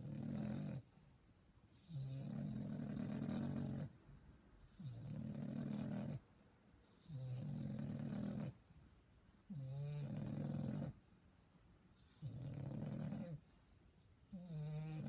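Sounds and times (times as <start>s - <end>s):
puppy snoring: 0.0s - 0.9s, 1.8s - 4.0s, 4.7s - 6.3s, 6.9s - 8.6s, 9.5s - 11.0s, 12.0s - 13.5s, 14.3s - 15.0s.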